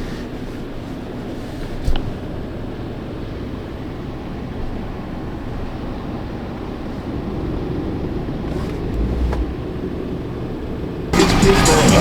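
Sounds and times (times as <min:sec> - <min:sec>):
car engine rumble inside cabin: 0:06.4 - 0:12.0.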